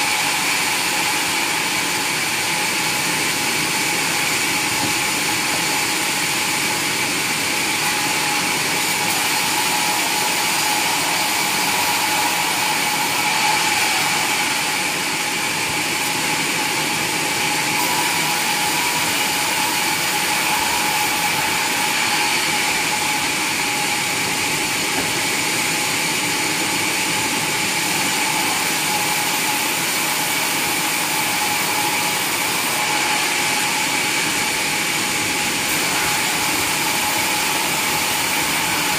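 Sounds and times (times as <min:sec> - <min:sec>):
sawmill saw whining: 0:00.0 - 0:38.9.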